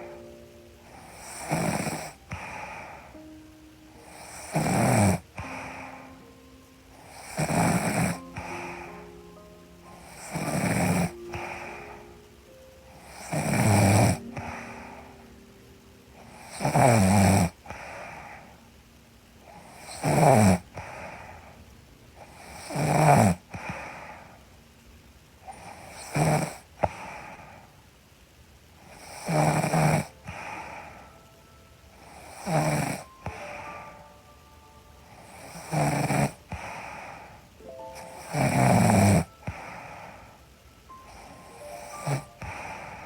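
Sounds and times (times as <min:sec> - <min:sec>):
quiet breathing: 0:00.0 - 0:43.0
woman snoring: 0:00.9 - 0:03.2, 0:04.0 - 0:06.1, 0:07.0 - 0:09.0, 0:09.9 - 0:12.0, 0:12.9 - 0:15.2, 0:16.2 - 0:18.5, 0:19.5 - 0:21.3, 0:22.2 - 0:24.2, 0:25.5 - 0:27.4, 0:28.9 - 0:31.0, 0:32.0 - 0:34.1, 0:35.1 - 0:40.3, 0:40.9 - 0:43.0.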